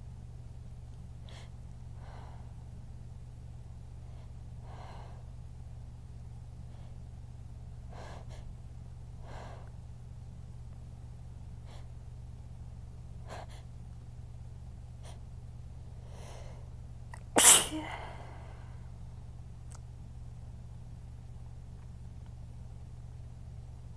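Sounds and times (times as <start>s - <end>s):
steady low hum: 0.0s - 23.9s
quiet breaths: 1.0s - 3.0s, 3.7s - 9.9s, 11.5s - 12.1s, 14.9s - 16.9s
person sneezing: 17.4s - 18.4s.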